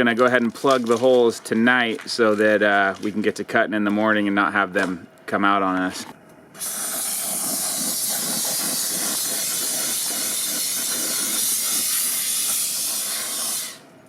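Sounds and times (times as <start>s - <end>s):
aerosol spray can hissing: 6.6s - 13.8s.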